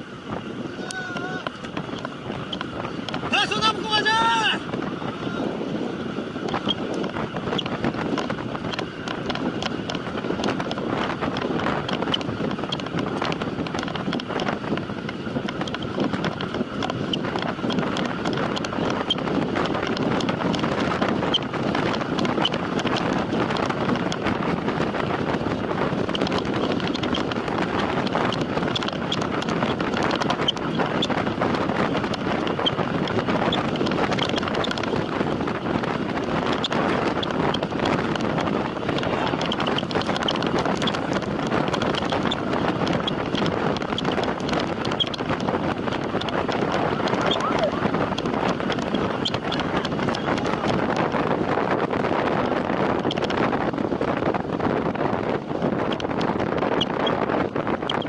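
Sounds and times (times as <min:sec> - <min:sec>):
wind rushing over microphone: 0:00.0 - 0:58.0
small clicks and rattles: 0:06.4 - 0:24.4, 0:25.9 - 0:54.2.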